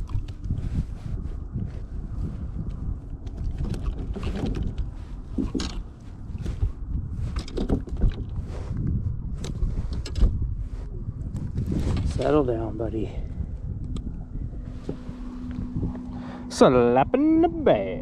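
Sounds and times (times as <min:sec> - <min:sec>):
wind rumbling on microphone: 0:00.0 - 0:18.0
knocks and clicks of gear: 0:03.3 - 0:05.9, 0:07.3 - 0:08.4, 0:09.4 - 0:10.4.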